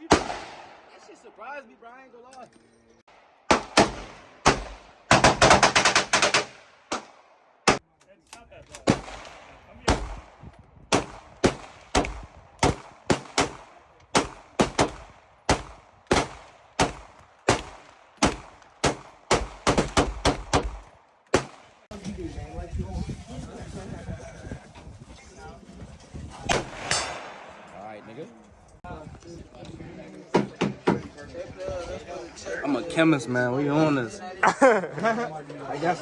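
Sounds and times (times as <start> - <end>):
gunshots with echo: 0.0 - 0.9, 3.2 - 7.8, 8.9 - 21.9, 26.5 - 27.8.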